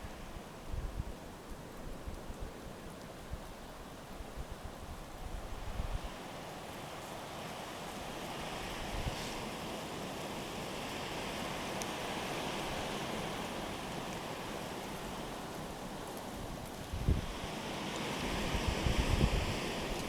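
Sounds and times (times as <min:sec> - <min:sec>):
wind bump on microphone: 0:05.2 - 0:06.2, 0:16.9 - 0:17.4, 0:18.3 - 0:20.0.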